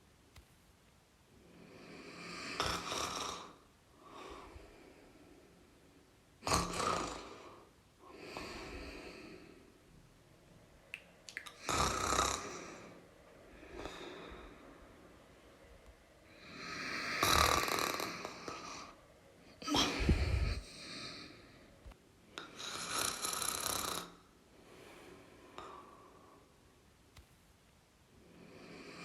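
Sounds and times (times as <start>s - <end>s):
quiet breathing: 1.3s - 10.9s, 11.6s - 26.9s, 28.1s - 29.0s
person snoring: 1.6s - 4.5s, 6.4s - 9.5s, 11.6s - 13.0s, 16.3s - 19.0s, 22.5s - 24.3s.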